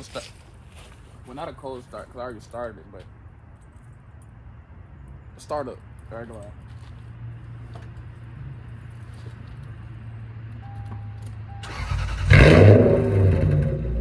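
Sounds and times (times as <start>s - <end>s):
short beeps: 10.6s - 11.8s
car engine starting and idling: 10.6s - 14.0s.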